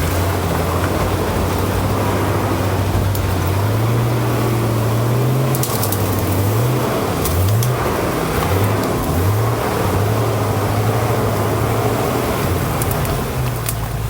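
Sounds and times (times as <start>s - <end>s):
vehicle engine revving: 0.0s - 14.0s
sharp cracks and clicks: 5.5s - 6.6s, 7.2s - 9.3s, 12.6s - 14.0s.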